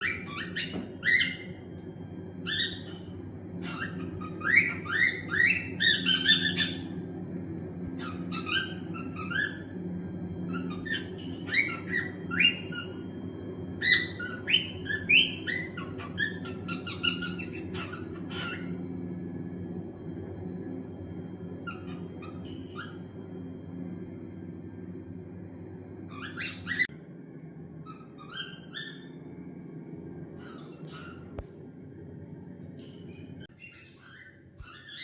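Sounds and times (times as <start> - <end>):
cockatiels chirping: 0.0 - 1.6, 2.4 - 7.0, 7.9 - 9.8, 10.4 - 13.0, 13.8 - 18.8, 21.7 - 23.0, 26.1 - 26.9, 27.9 - 29.2, 30.4 - 31.5, 32.8 - 35.0
low hum: 0.0 - 33.6.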